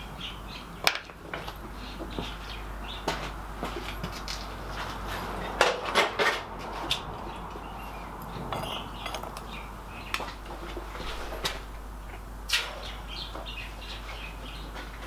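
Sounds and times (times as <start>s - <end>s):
steady background hum: 0.0s - 15.0s
metal clinks and clatters: 8.2s - 9.5s.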